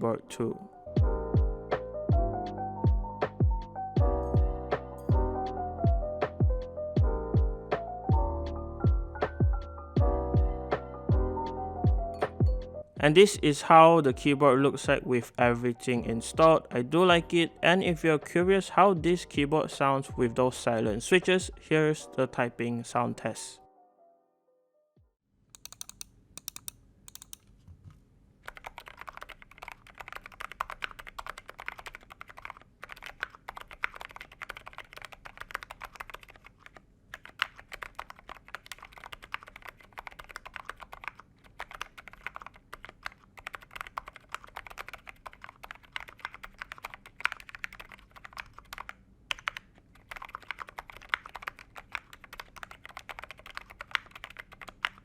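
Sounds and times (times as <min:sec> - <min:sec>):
typing on mechanical keyboard: 0:25.6 - 0:27.5, 0:28.4 - 0:55.0.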